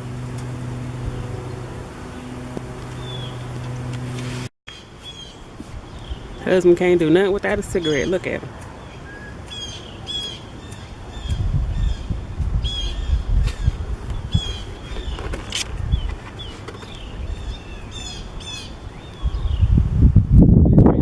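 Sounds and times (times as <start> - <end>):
birds chirping and trilling: 0.0 - 19.8
wind rumble on microphone: 5.6 - 21.0.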